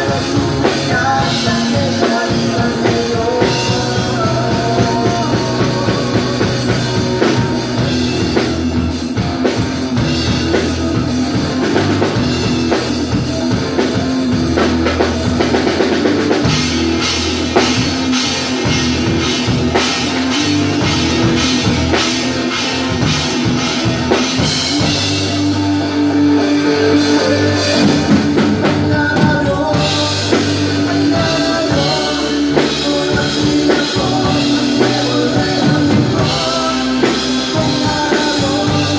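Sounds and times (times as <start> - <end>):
person singing: 0.0 - 8.8, 24.5 - 38.9
drum kit beat: 0.0 - 38.9
rock band playing live: 0.0 - 38.9.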